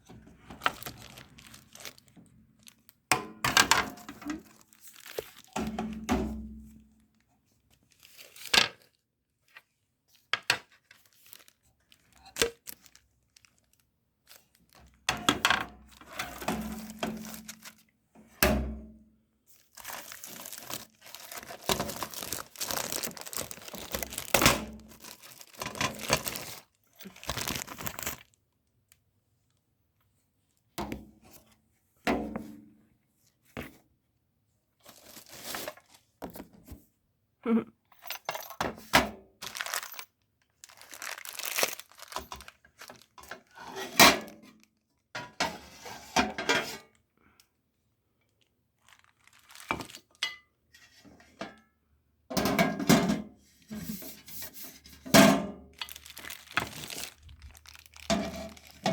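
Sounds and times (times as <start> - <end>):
packaging crinkling and tearing: 0.5 - 3.0, 3.8 - 6.1, 7.8 - 8.9, 10.8 - 15.1, 15.9 - 17.8, 19.5 - 28.4, 34.8 - 36.0, 39.4 - 43.6, 48.8 - 50.2, 55.7 - 58.9.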